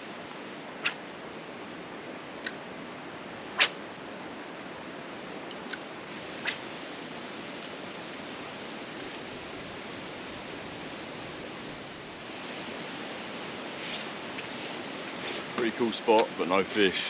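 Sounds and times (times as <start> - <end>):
creek water rushing: 0.0 - 17.0.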